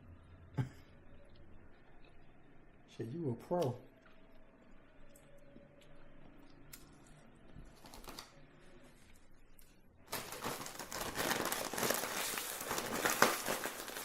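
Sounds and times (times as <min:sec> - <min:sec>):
food packaging crinkling: 0:07.7 - 0:08.4, 0:09.6 - 0:14.0.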